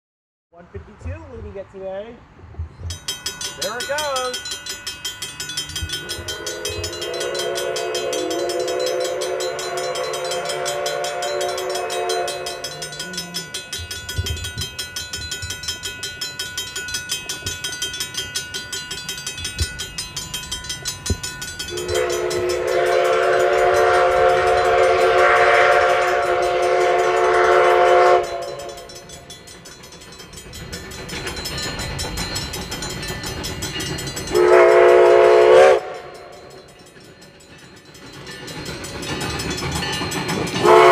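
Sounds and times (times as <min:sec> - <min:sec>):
passing train pulsing: 0:00.6 - 0:40.9
steam whistle blasts: 0:06.0 - 0:13.2, 0:21.7 - 0:29.0, 0:34.3 - 0:36.3, 0:40.6 - 0:40.9.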